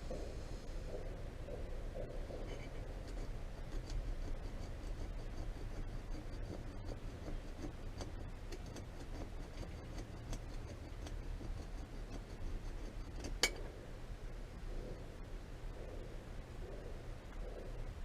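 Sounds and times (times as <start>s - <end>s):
file rasping on metal: 2.9s - 13.5s.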